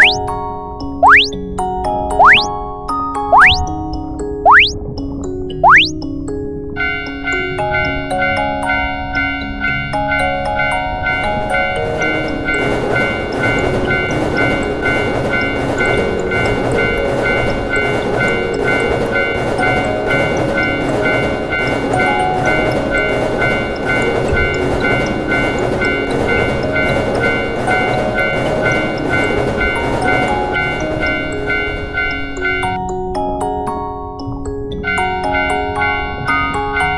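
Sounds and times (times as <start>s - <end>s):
railroad crossing bell ringing: 0.0s - 0.4s, 6.8s - 32.8s, 34.8s - 36.9s
train rumble and rail clatter: 6.8s - 32.8s.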